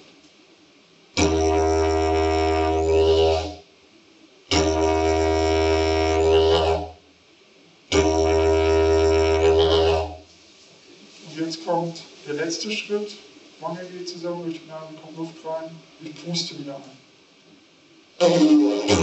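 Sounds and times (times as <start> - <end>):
didgeridoo droning: 1.2 - 3.6, 4.5 - 7.0, 7.9 - 10.2, 18.8 - 19.0.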